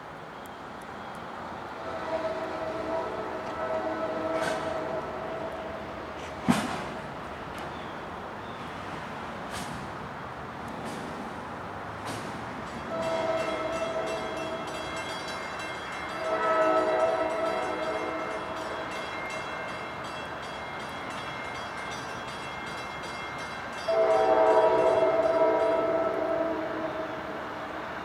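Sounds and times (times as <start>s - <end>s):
train horn blasts: 1.8s - 6.1s, 12.8s - 14.8s, 16.1s - 19.0s, 23.8s - 27.7s.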